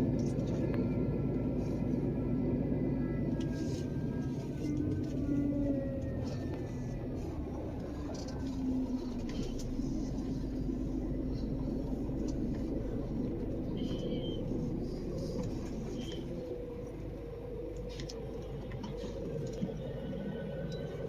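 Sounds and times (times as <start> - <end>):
diesel truck engine rumbling: 0.0 - 21.0.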